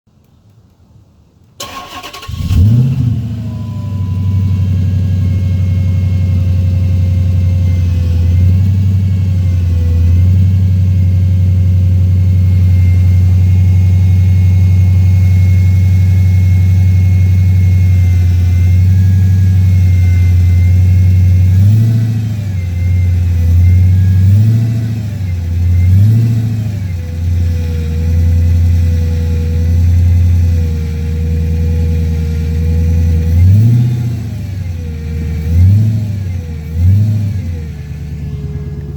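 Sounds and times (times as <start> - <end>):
car engine starting and revving: 1.6 - 38.9
high whine: 2.8 - 33.3.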